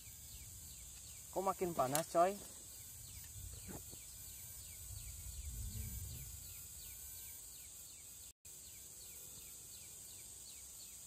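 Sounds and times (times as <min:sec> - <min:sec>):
high insect drone: 0:00.0 - 0:11.0
low rumble: 0:02.5 - 0:07.3.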